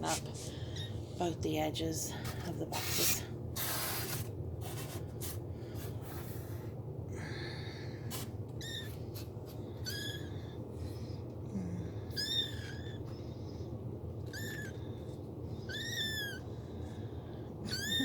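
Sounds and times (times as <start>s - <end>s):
kittens mewing: 8.1s - 10.6s, 11.9s - 13.1s, 14.2s - 15.0s, 15.6s - 16.5s, 17.6s - 18.0s.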